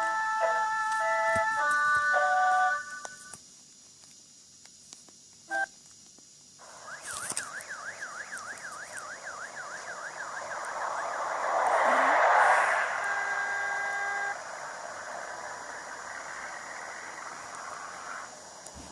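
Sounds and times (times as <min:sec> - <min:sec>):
melodic phone ringtone: 0:00.0 - 0:03.2
siren-style ringtone: 0:00.0 - 0:03.2, 0:06.6 - 0:16.3.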